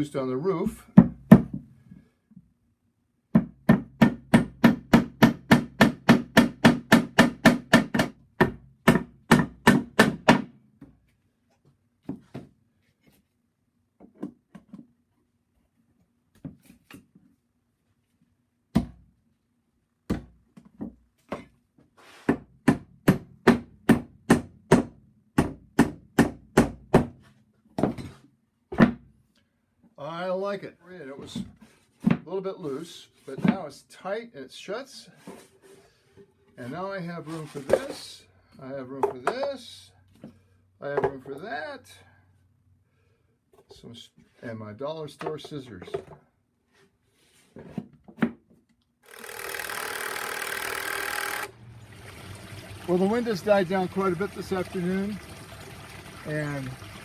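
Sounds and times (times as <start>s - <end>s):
hammer tapping tacks into wood: 3.3s - 10.5s.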